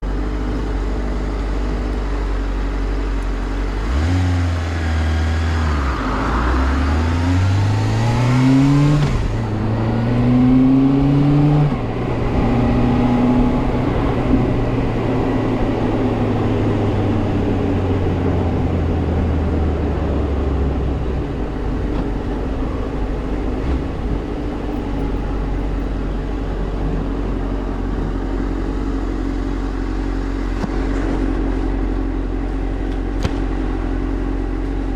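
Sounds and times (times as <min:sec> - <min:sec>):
motorcycle engine revving: 0:03.7 - 0:26.4.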